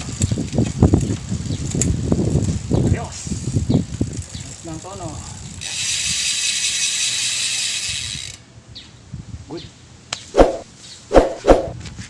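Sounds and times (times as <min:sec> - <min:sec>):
bicycle freewheel hub clicking: 0:00.0 - 0:08.4.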